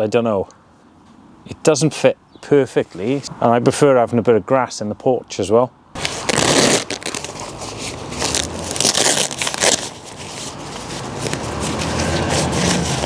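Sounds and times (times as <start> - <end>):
tent fabric rustling and crunching: 6.0 - 13.0.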